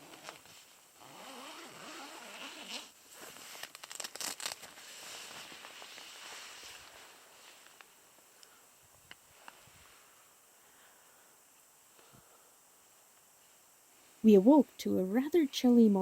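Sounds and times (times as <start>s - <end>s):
zipper pulled: 0.0s - 6.1s
fabric rustling: 0.0s - 7.9s.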